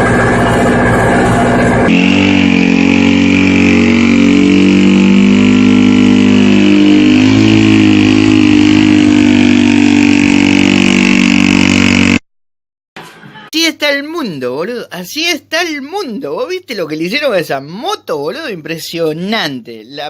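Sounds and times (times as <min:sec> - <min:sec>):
motorcycle engine running: 0:00.0 - 0:12.2.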